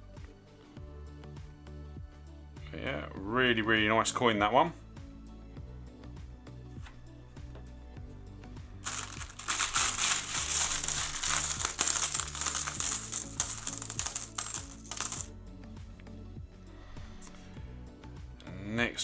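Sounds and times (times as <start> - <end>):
metal coins clattering and jingling: 8.8 - 15.3.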